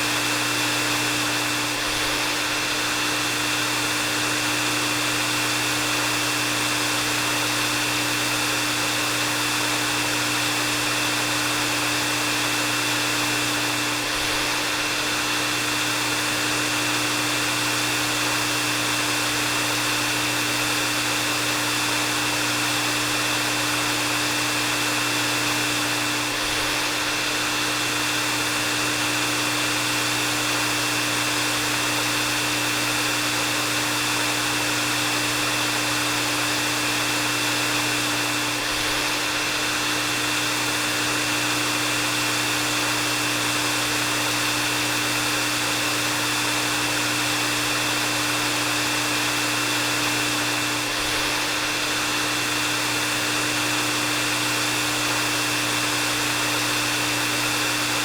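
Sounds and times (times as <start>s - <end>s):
hair dryer running: 0.0s - 58.0s.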